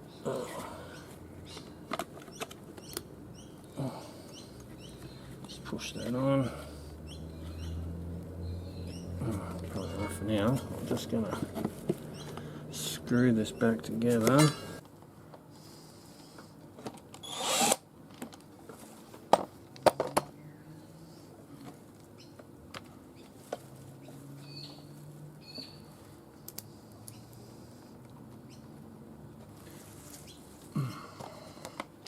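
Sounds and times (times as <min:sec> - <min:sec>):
handling clicks and knocks: 0:09.6 - 0:12.5
cordless drill driving screws: 0:17.2 - 0:17.8.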